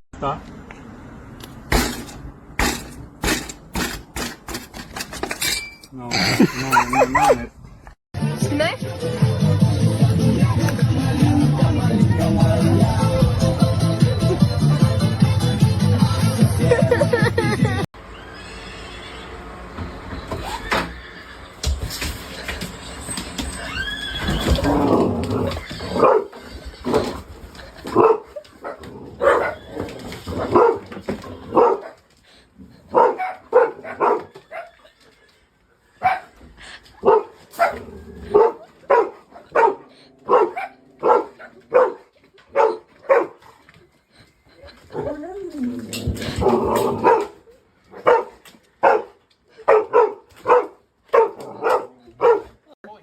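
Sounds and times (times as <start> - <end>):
dog barking: 26.0 - 26.3, 27.9 - 29.6, 30.4 - 30.9, 31.5 - 32.0, 32.9 - 34.7, 36.0 - 36.3, 37.0 - 43.4, 47.0 - 52.6.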